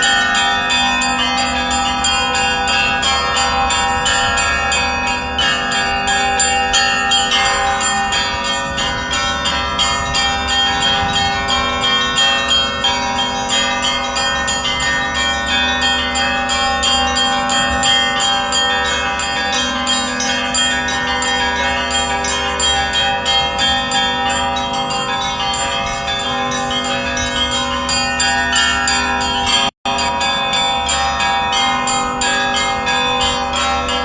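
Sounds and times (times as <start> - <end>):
large church bells ringing: 0.0 - 34.0
small bells struck quickly: 0.0 - 34.0.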